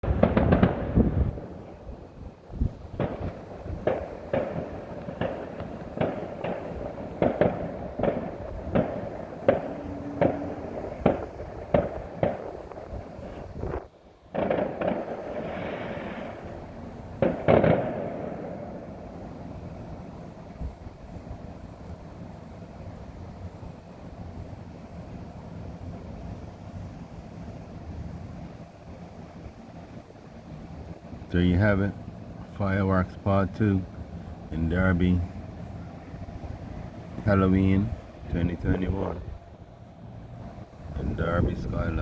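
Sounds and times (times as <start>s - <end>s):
fireworks bangs and pops: 0.0s - 1.8s, 2.5s - 19.1s.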